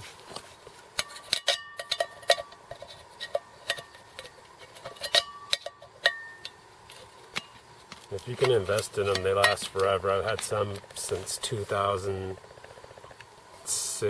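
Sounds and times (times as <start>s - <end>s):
metal cookware clinking: 1.0s - 6.6s, 8.3s - 9.8s.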